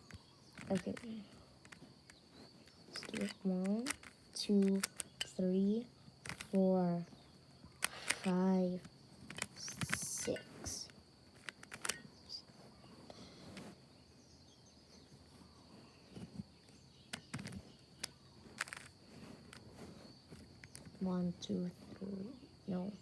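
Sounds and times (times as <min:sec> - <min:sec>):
puzzle cube clicking: 0:00.0 - 0:06.6, 0:07.7 - 0:12.4, 0:17.1 - 0:19.8, 0:20.4 - 0:21.0.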